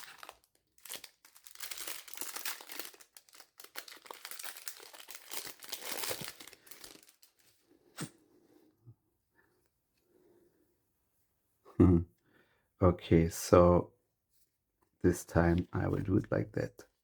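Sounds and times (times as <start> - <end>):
wrapper crinkling and tearing: 0.0 - 7.4.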